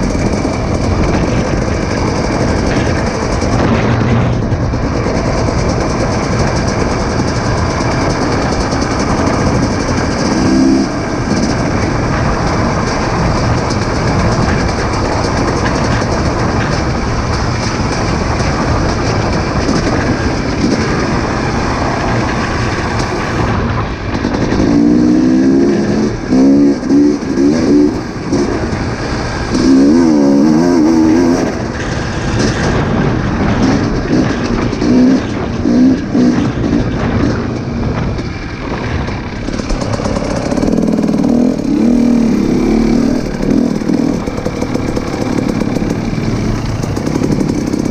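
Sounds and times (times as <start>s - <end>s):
vehicle rumbling and rattling: 0.0s - 47.9s.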